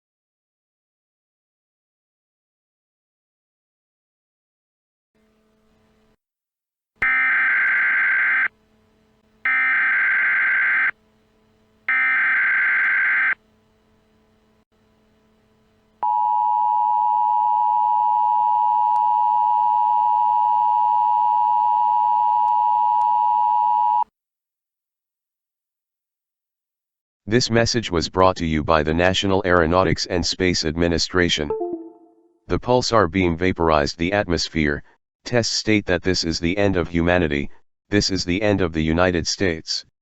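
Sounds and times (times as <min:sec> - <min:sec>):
buzzing digital data signal: 0:07.0 - 0:08.6, 0:09.4 - 0:11.0
two-tone attention signal: 0:31.5 - 0:32.4.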